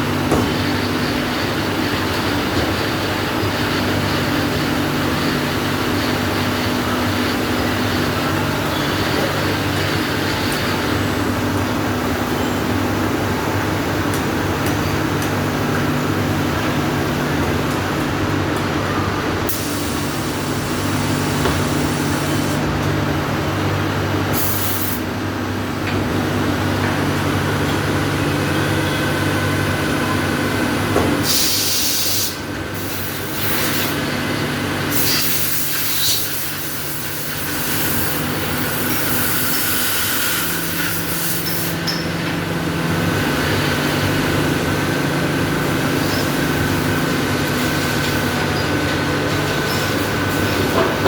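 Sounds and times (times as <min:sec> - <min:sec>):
lathe machine hum: 0:25.0 - 0:51.0
machine whirring: 0:26.4 - 0:51.0
air hissing: 0:31.2 - 0:34.0.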